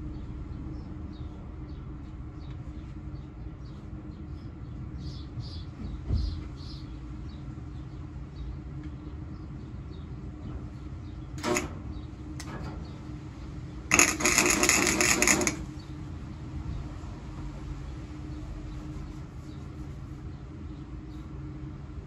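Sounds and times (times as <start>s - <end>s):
welding arc crackling: 11.4s - 11.6s, 13.9s - 15.8s.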